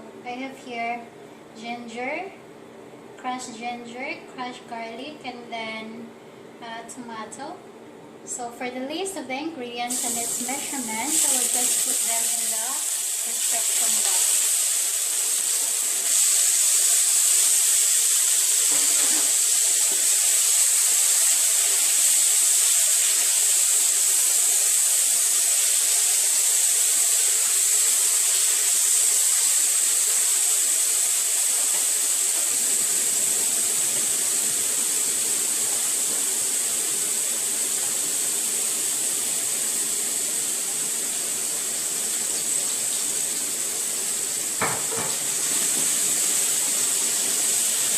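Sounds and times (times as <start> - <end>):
food sizzling in hot oil: 9.9 - 47.9.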